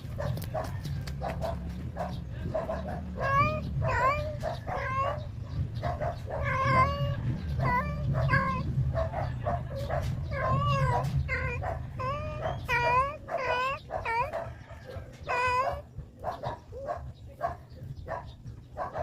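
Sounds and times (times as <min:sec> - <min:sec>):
dog whimpering and yipping: 0:02.0 - 0:17.0.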